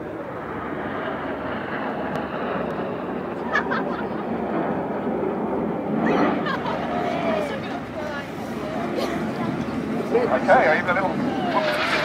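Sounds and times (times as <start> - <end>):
jets flying over: 0.0 - 12.0.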